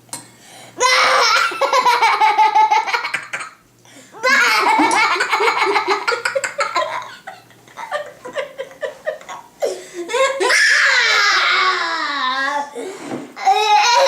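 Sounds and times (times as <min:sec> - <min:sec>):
young boy giggling: 0:04.2 - 0:11.4.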